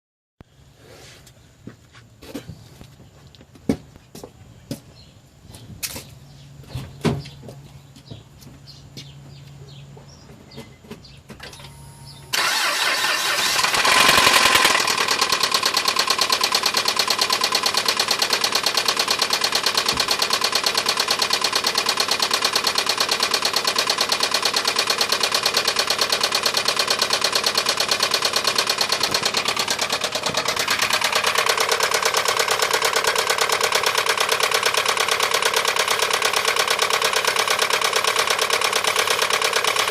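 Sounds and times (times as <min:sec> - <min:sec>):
engine starting and idling: 0:11.4 - 0:39.9
engine knocking: 0:12.4 - 0:39.9.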